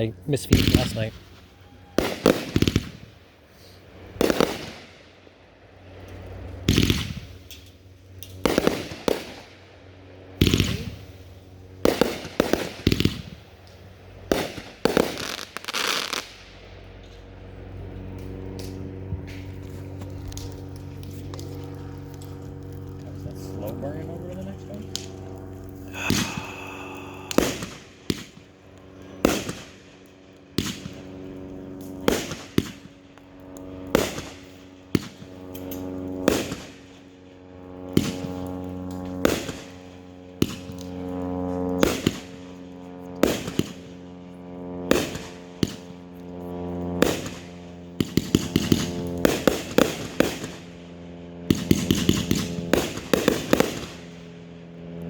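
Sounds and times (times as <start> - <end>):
firework shots: 0.3 - 5.3, 6.0 - 9.7, 10.3 - 16.8, 25.9 - 31.1, 31.9 - 32.9, 33.9 - 35.6, 36.2 - 37.0, 37.9 - 38.4, 39.1 - 40.9, 41.8 - 42.5, 43.2 - 44.0, 44.9 - 45.9, 47.0 - 50.7, 51.4 - 54.2.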